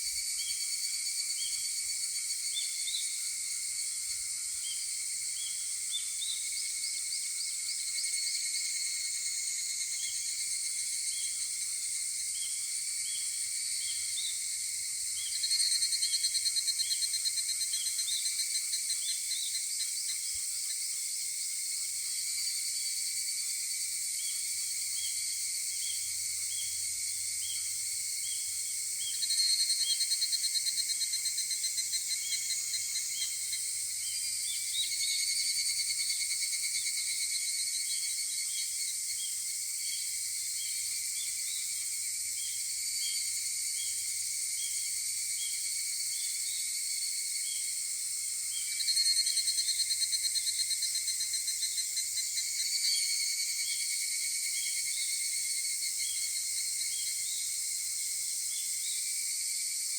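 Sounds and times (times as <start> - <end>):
cicada trills: 0.0 - 59.9
high insect chorus: 0.0 - 59.9
short insect chirps: 22.1 - 59.9.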